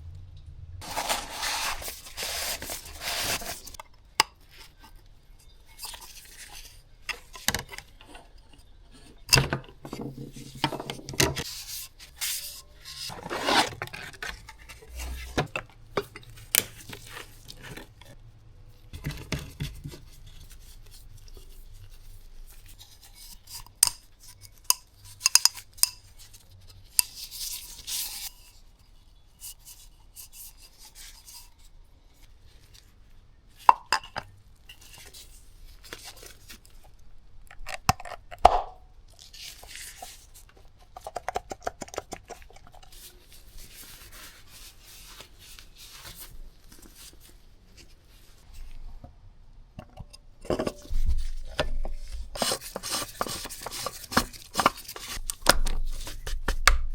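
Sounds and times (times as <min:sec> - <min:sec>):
parts rubbing and scraping: 0:00.8 - 0:03.8, 0:05.7 - 0:18.2, 0:49.8 - 0:55.2.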